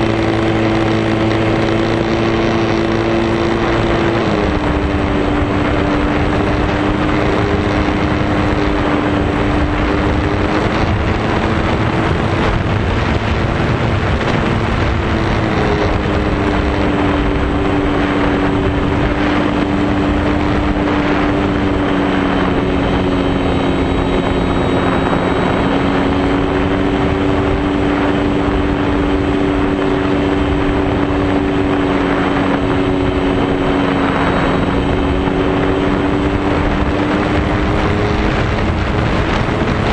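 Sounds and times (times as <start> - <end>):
electric motor and propeller: 0.0 - 39.9
wind rush on microphone: 0.0 - 39.9.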